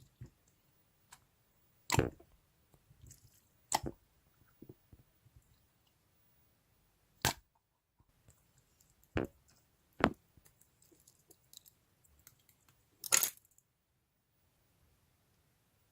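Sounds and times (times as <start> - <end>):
slime popping: 1.9 - 2.2.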